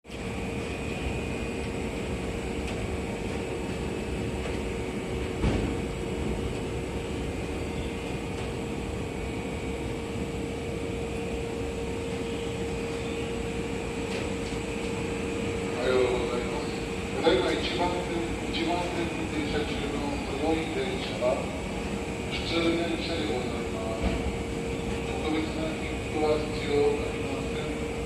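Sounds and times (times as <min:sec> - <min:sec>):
electric train humming: 0:00.0 - 0:28.0
thump: 0:05.4 - 0:05.8.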